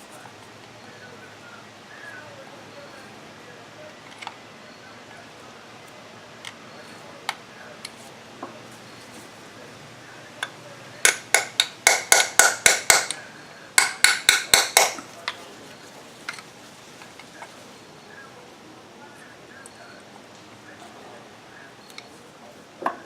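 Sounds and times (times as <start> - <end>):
hammer tapping on metal: 10.4 - 13.2, 13.8 - 15.4.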